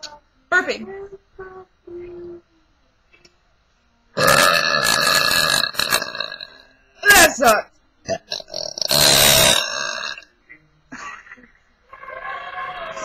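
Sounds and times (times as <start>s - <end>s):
person burping loudly: 4.2s - 6.6s, 8.1s - 10.3s.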